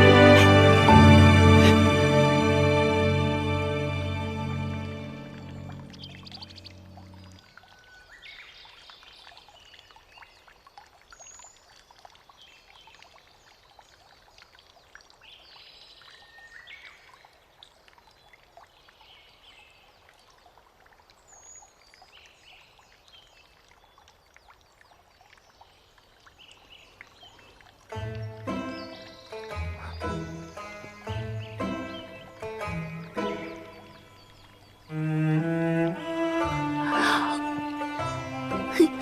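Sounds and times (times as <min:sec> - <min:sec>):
bird chirps and twitters: 0:05.7 - 0:10.3.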